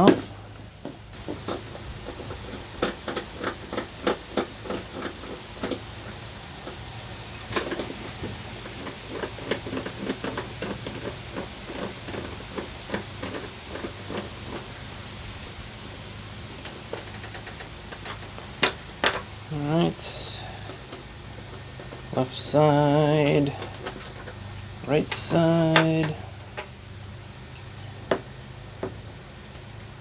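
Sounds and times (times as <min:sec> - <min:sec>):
hand tool clicking on bolts: 0:19.9 - 0:26.7.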